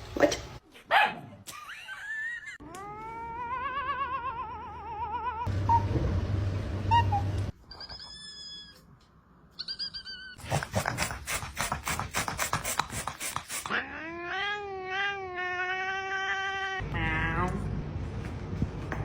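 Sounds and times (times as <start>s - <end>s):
cat yowling: 2.7s - 5.8s, 13.7s - 17.4s.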